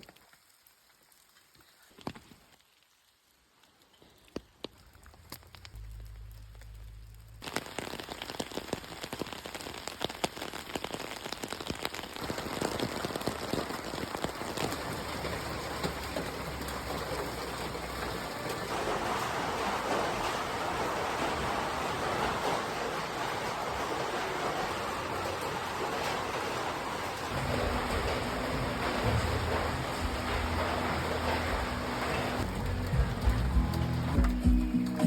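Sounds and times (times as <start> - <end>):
rain pattering: 0.0 - 35.0.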